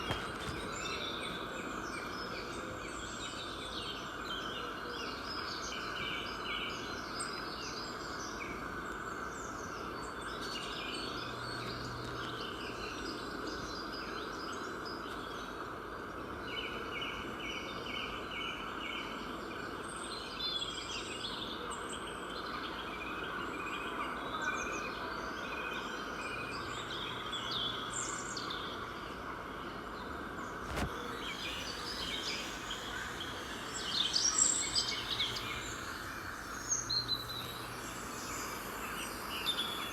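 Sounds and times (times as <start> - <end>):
steady background hiss: 0.0 - 39.9
small birds chirping: 30.5 - 39.9
bird rapid trill: 30.7 - 39.9.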